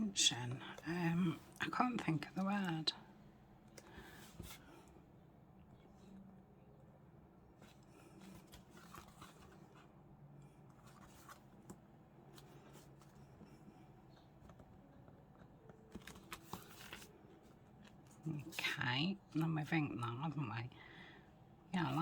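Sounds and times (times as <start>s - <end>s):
paper scuffing and rustling: 16.0s - 17.2s.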